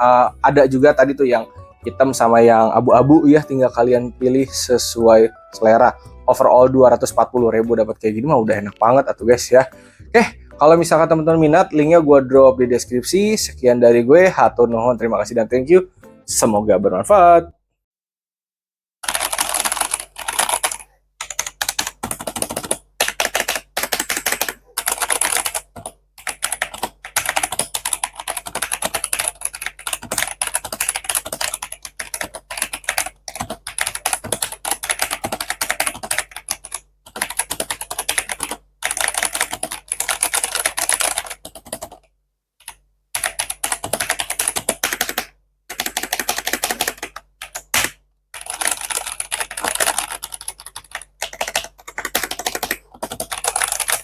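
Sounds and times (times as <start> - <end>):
fast typing on mechanical keyboard: 19.0 - 42.0, 42.6 - 54.0.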